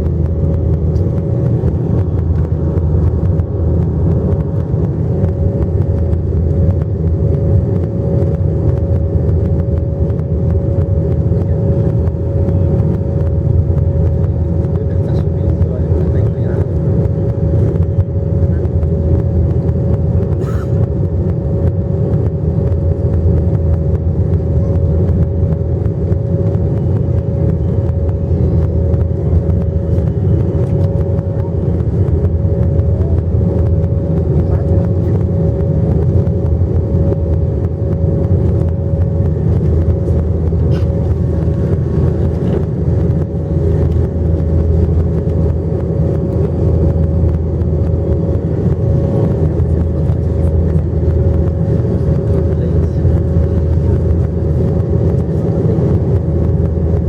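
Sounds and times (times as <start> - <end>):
jet engine and airflow drone: 0.0 - 57.0
steady hum: 0.0 - 57.0.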